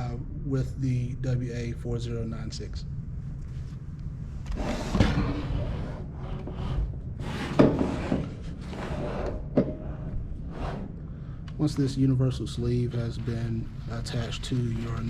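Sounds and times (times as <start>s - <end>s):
rubbing and scraping of parts: 4.5s - 10.9s.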